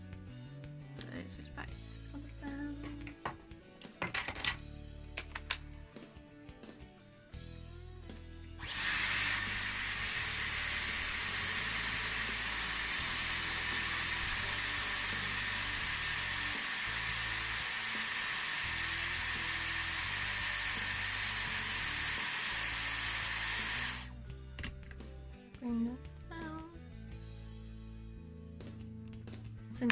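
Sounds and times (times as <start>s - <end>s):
hair styler blowing air: 8.6s - 24.1s.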